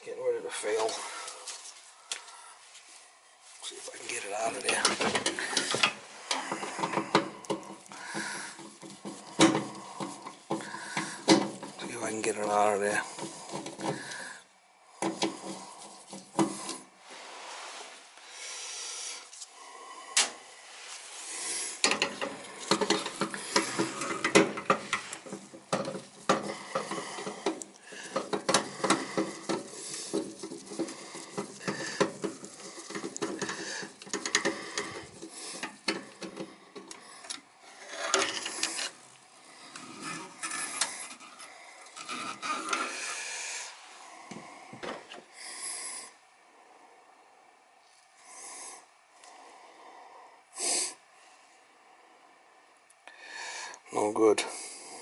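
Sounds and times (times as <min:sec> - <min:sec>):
tools scraping and clicking on metal: 0:21.8 - 0:39.0, 0:39.7 - 0:43.1.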